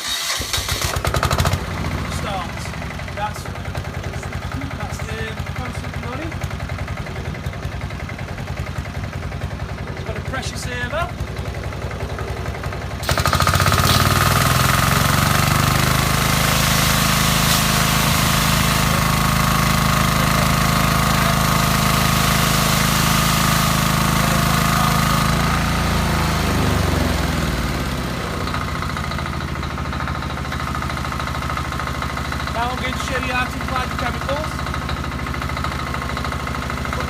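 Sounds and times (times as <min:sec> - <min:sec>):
pressure washer engine: 0:00.0 - 0:37.0
hissing water jet: 0:13.0 - 0:27.3.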